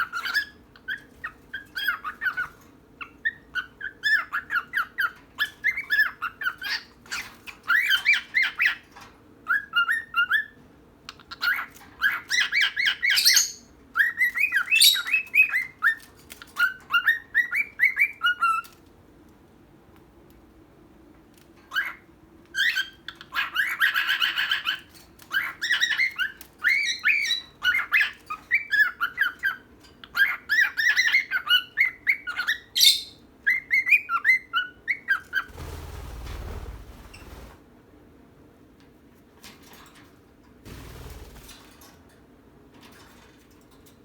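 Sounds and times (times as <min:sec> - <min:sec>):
cockatiel chirping: 0:00.0 - 0:08.8, 0:11.3 - 0:16.0, 0:22.6 - 0:35.5
low rumbling noise: 0:35.5 - 0:37.6.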